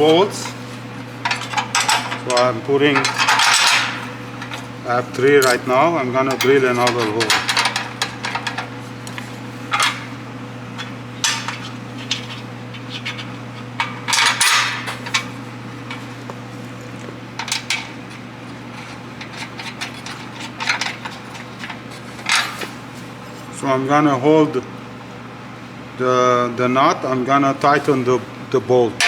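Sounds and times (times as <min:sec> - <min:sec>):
steady low hum: 0:00.0 - 0:29.0
metal bolts and tools clinking: 0:01.2 - 0:04.6.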